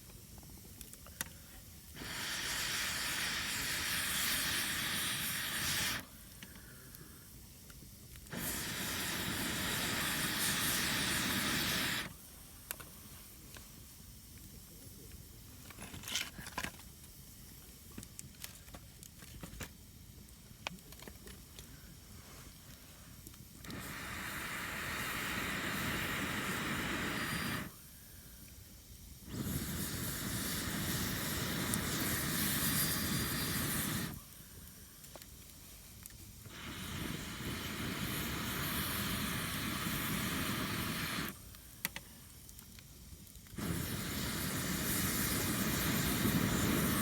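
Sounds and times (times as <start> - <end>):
loud rushing hiss: 1.5 - 7.7, 8.3 - 14.3, 21.8 - 35.7, 36.3 - 42.4, 43.6 - 47.0
campfire crackling and popping: 28.4 - 47.0.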